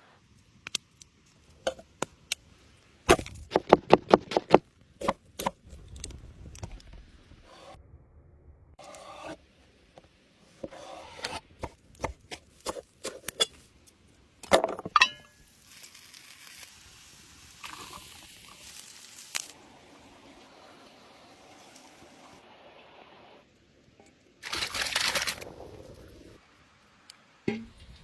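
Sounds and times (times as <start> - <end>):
metal clanks ringing: 15.0 - 15.4
steady hiss: 15.2 - 28.0.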